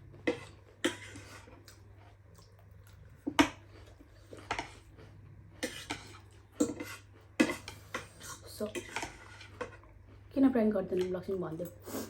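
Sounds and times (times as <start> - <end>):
cutlery scraping a bowl: 0.2 - 1.5, 5.6 - 9.8.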